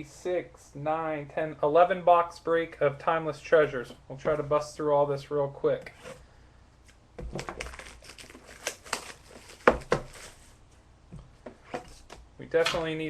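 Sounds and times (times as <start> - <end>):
plastic wrapping crinkling and tearing: 7.3 - 10.6.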